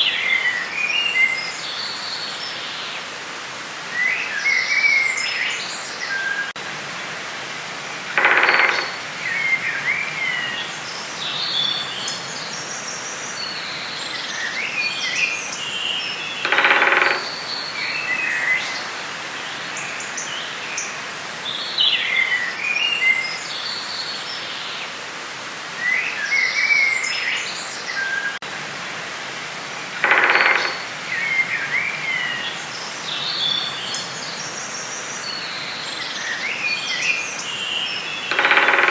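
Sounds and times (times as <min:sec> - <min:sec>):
steady background hiss: 0:00.0 - 0:38.9
low buzzy bird call: 0:08.0 - 0:10.7, 0:16.2 - 0:18.8, 0:29.8 - 0:32.6, 0:38.2 - 0:38.9.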